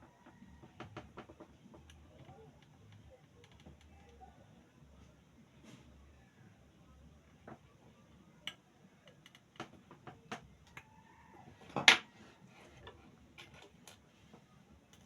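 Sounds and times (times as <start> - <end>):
light clicks and taps: 8.4 - 10.9.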